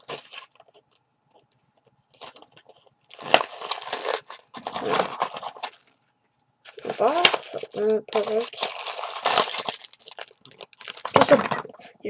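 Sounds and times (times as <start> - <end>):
cardboard packaging crinkling and tearing: 0.0 - 0.9, 2.1 - 6.0, 6.6 - 11.6.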